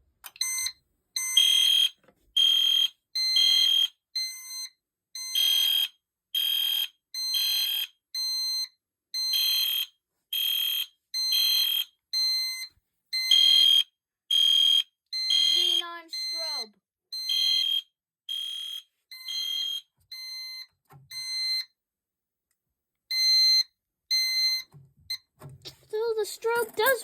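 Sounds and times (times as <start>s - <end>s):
fire alarm horn pulsing: 13.3s - 16.7s.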